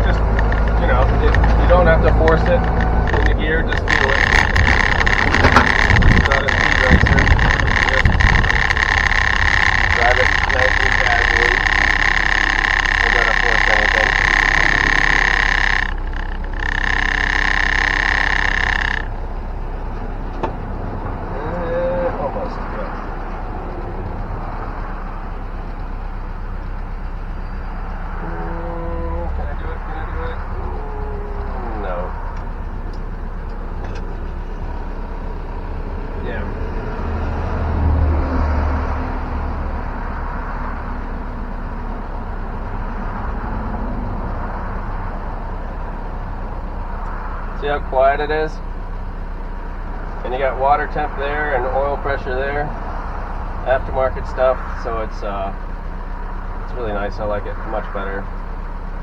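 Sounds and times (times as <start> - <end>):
click: 0.0 - 19.1
engine and road rumble: 0.0 - 59.0
loud rattling buzz: 0.0 - 59.0.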